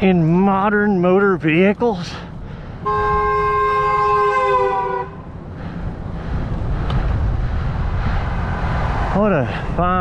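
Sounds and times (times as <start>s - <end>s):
car horn blast: 2.8s - 5.3s.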